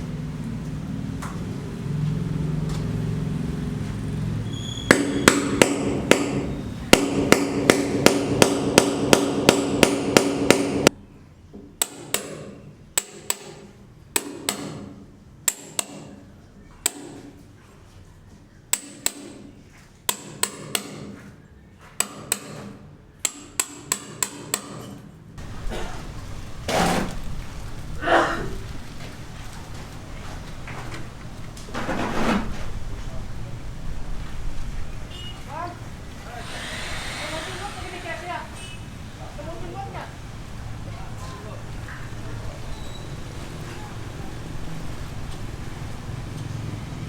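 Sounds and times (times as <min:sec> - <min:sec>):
hammer blows: 0:04.5 - 0:10.9, 0:36.2 - 0:38.9.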